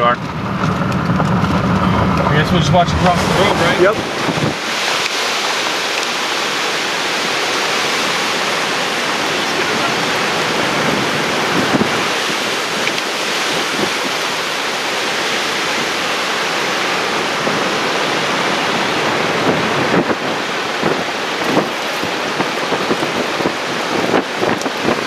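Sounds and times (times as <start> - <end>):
roar of tornado wind and rain: 0.0 - 25.0
wind buffeting microphone: 0.0 - 25.0.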